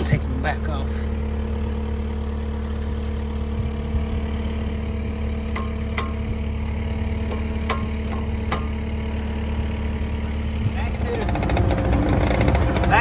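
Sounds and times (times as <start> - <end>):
loader engine running: 0.0 - 13.0
metal clanks: 5.3 - 13.0.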